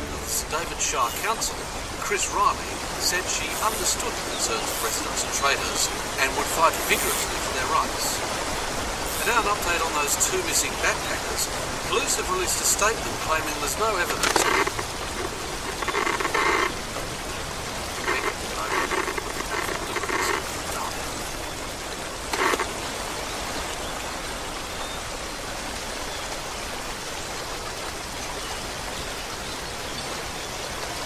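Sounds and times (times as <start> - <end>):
voice: 0.0 - 8.3, 9.1 - 16.7, 17.9 - 21.4
flowing water hissing: 0.0 - 29.8.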